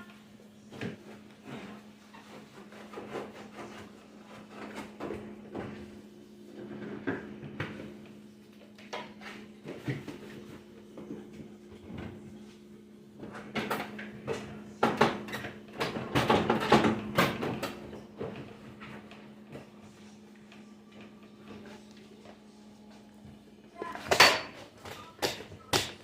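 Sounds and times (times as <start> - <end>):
items knocking and clattering: 0.6 - 12.4, 13.2 - 19.7, 23.8 - 26.0.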